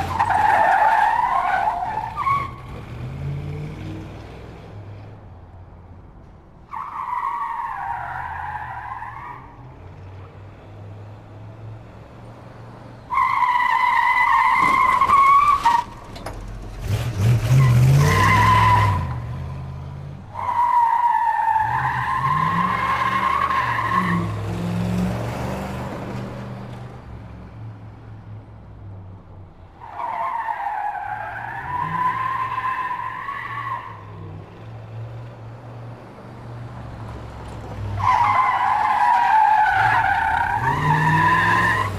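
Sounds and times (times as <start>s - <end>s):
tyres squealing: 0.0s - 2.8s, 13.1s - 25.3s, 37.0s - 41.9s.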